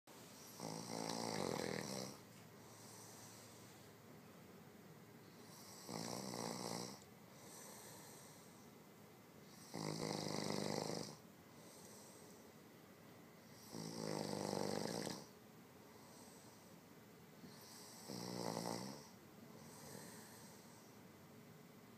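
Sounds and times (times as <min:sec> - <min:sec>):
quiet breathing: 0:00.1 - 0:21.6
man snoring: 0:00.4 - 0:02.2, 0:05.3 - 0:08.5, 0:09.4 - 0:12.2, 0:13.5 - 0:15.3, 0:17.5 - 0:20.7.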